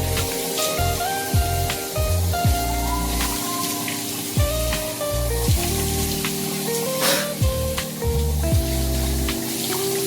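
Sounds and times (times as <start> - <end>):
deep booming bass beat: 0.0 - 3.4, 4.4 - 6.4, 7.4 - 9.4
hissy wash and light ticks: 0.1 - 10.0.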